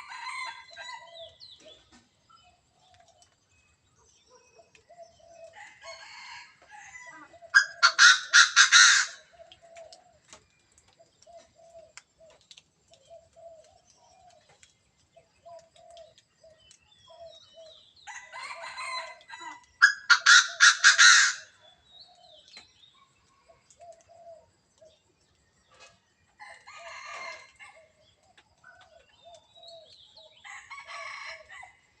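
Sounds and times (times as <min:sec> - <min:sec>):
partridge crowing: 0:05.6 - 0:09.8, 0:18.1 - 0:21.6.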